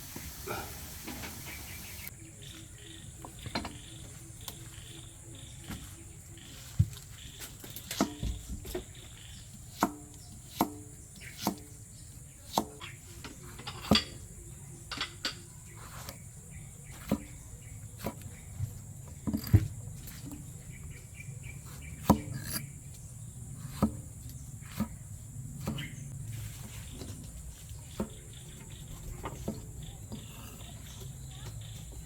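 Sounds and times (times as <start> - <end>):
insects droning: 0.0 - 32.0
knife chopping on wooden board: 9.6 - 11.8, 12.5 - 14.1, 16.9 - 20.4, 21.6 - 22.7, 23.6 - 25.0, 25.6 - 26.0.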